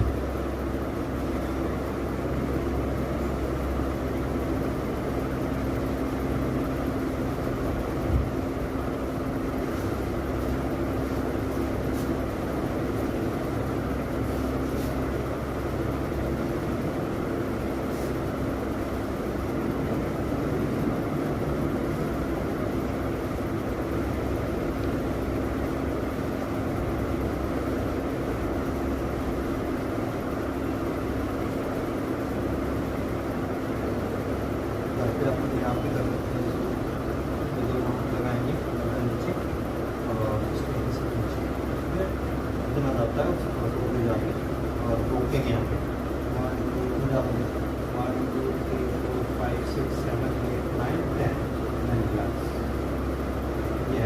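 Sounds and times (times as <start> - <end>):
steady mechanical hum: 0.0 - 54.0.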